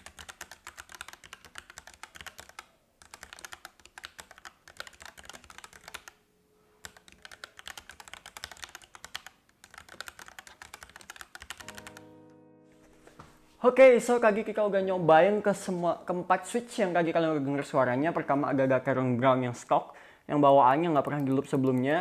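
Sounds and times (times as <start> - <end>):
mechanical keyboard typing: 0.0 - 6.2, 6.8 - 12.1.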